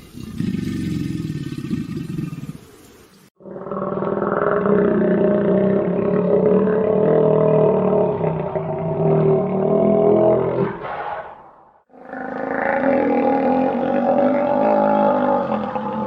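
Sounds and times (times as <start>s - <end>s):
droning animal call: 3.4s - 16.0s.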